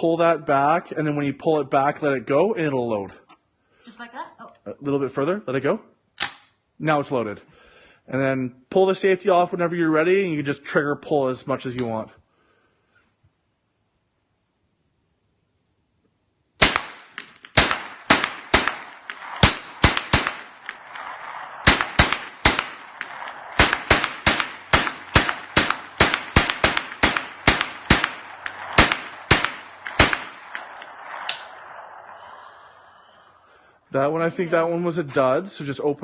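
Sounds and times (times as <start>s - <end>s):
semi-automatic gunfire: 16.6s - 31.8s.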